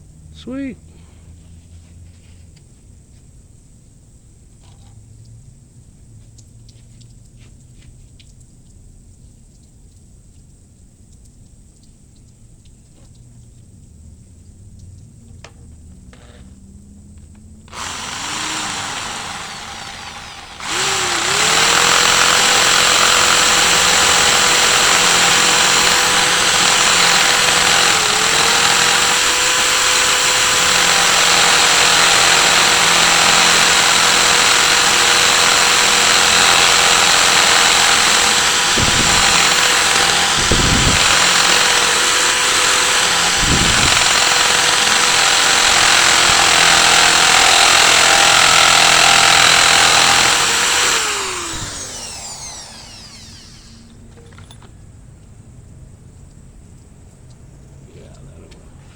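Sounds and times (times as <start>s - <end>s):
drill whining into concrete: 17.7s - 54.5s.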